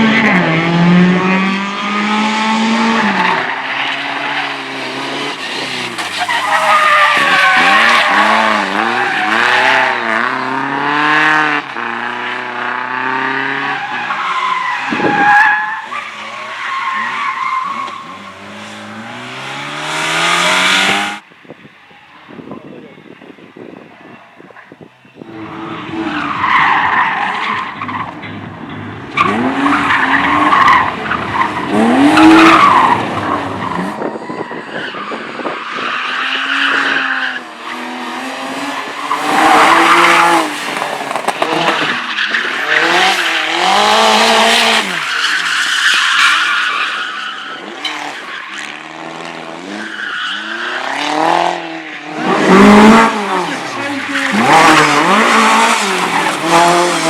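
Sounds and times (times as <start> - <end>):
tyre squeal: 3.0 - 10.1, 13.1 - 21.2, 22.2 - 49.0, 49.8 - 57.0
car engine revving hard: 6.9 - 21.2, 25.2 - 34.1, 36.3 - 46.1, 47.5 - 57.0.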